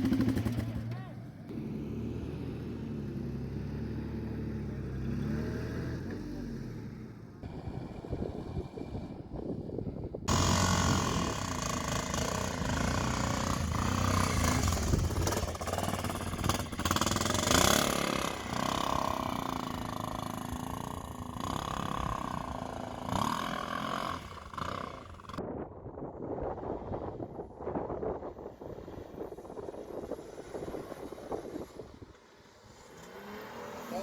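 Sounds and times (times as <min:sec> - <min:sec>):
vehicle engine under load: 0:00.0 - 0:25.4
rough noise: 0:10.3 - 0:25.4.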